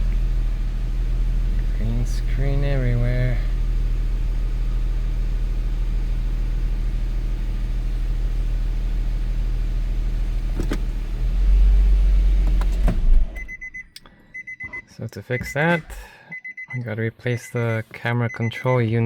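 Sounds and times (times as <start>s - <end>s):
car engine idling: 0.0s - 14.4s.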